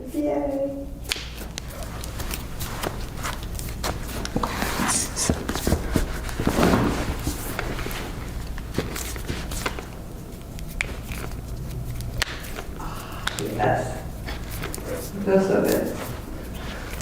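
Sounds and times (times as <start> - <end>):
steady low hum: 0.0 - 17.0
hands rubbing skin and fabric: 0.4 - 17.0
scuffing sound: 1.3 - 11.6.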